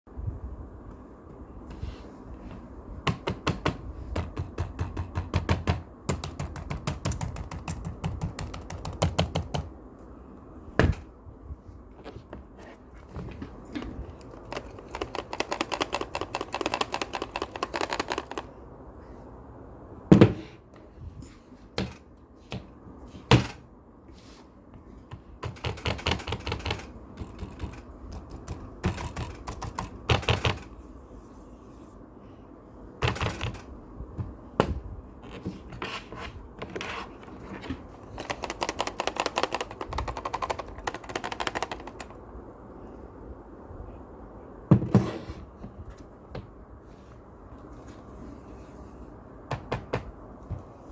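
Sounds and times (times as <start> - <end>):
hard drive rattling: 13.8 - 18.5, 38.0 - 42.2.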